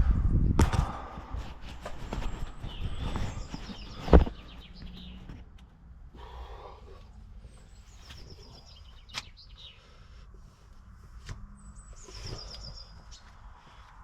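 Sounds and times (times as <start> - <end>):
small bird singing: 1.4 - 5.7, 6.3 - 10.1, 11.4 - 13.5.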